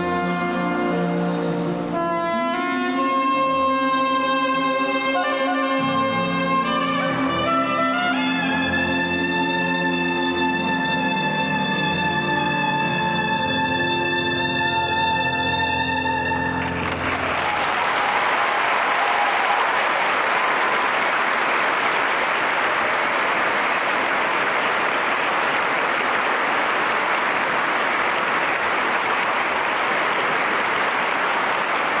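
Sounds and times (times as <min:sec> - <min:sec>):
large crowd applauding: 0:16.2 - 0:32.0.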